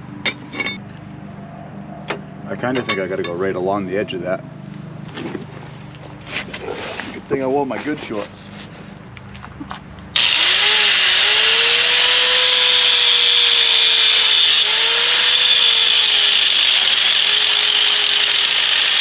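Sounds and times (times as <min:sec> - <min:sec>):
angle grinder cutting steel: 0:10.2 - 0:19.0.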